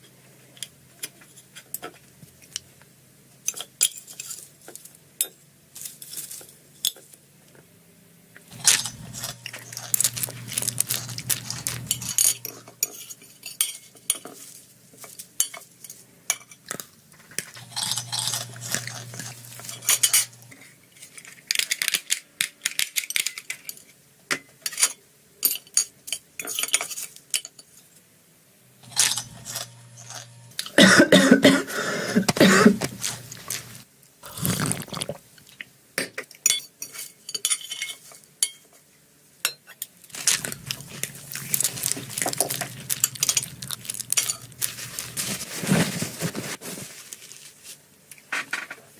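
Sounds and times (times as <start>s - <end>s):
cutlery scraping a plate: 8.5s - 14.4s, 17.6s - 21.2s.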